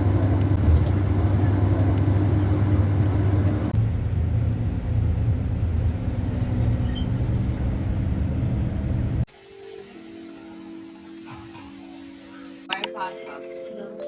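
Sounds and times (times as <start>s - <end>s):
bus engine and road rumble: 0.0s - 9.3s.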